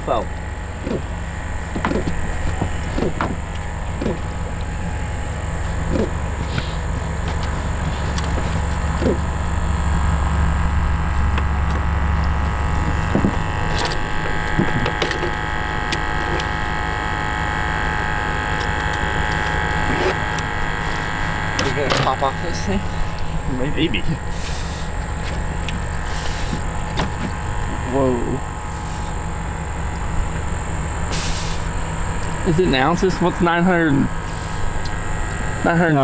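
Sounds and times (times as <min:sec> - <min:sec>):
small motor humming and whining: 0:00.0 - 0:36.0
short knocks and clicks: 0:00.8 - 0:09.4.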